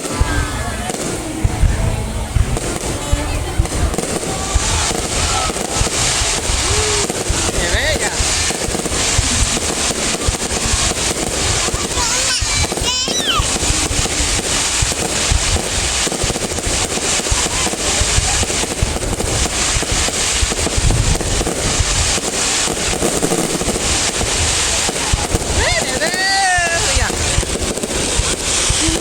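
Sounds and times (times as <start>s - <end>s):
firework whistle: 0.0s - 29.0s
fireworks pops and bangs: 0.0s - 29.0s.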